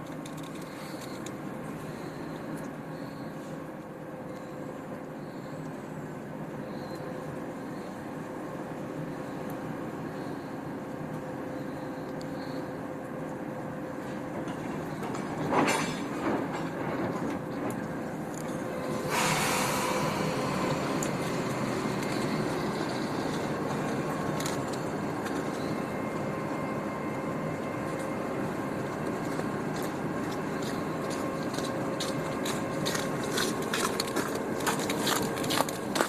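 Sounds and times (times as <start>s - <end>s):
locomotive diesel engine running: 0.0s - 36.0s
air hiss: 18.8s - 22.1s.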